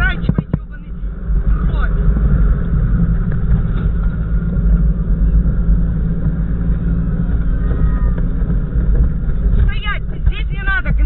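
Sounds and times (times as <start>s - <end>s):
vehicle engine rumbling: 0.0s - 11.0s.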